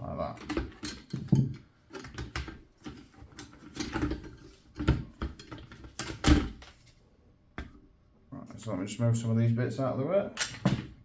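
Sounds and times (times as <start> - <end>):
plastic parts clicking and knocking: 0.3 - 6.8.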